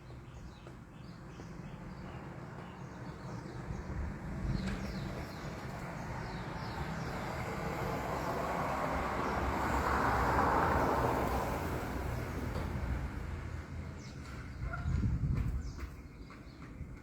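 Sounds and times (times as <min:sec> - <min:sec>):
vehicle passing by: 0:04.1 - 0:14.2.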